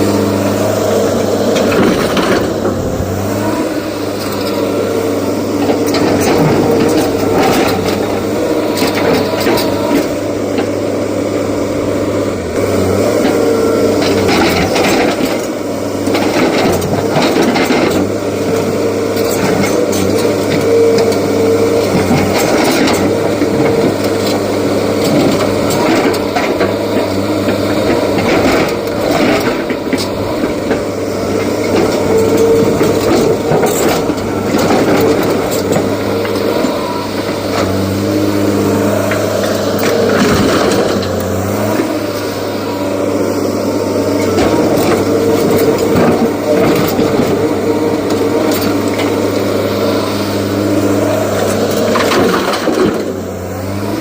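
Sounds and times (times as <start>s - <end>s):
excavator diesel engine running: 0.0s - 54.0s
metal clanks and knocks: 25.0s - 37.9s.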